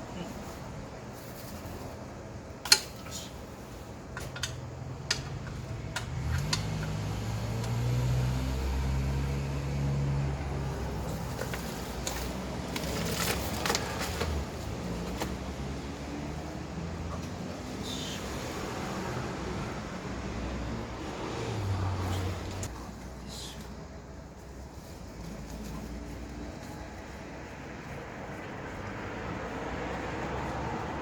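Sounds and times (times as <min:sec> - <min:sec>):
sharp clicks and knocks: 0:04.1 - 0:07.0.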